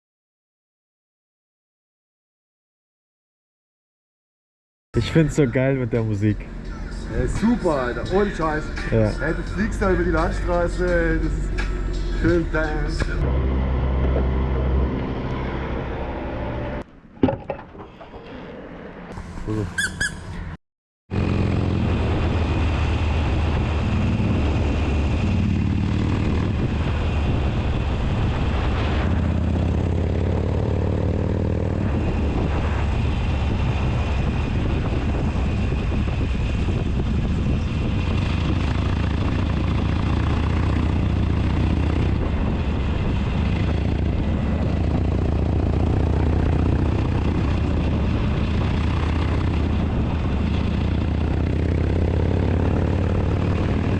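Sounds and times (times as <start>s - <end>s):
wind and road noise: 5.0s - 53.9s
motorcycle engine running: 21.1s - 28.4s, 29.0s - 53.9s.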